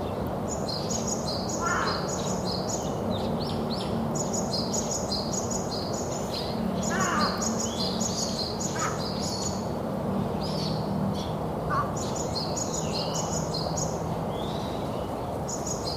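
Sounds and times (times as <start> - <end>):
small birds chirping: 0.0 - 15.9
lower louder bird calls: 0.5 - 9.7.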